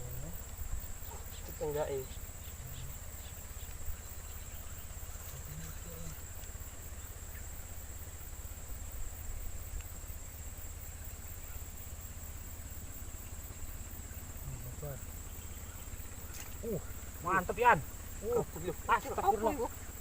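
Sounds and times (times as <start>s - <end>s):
insect chorus trilling: 0.0s - 20.0s.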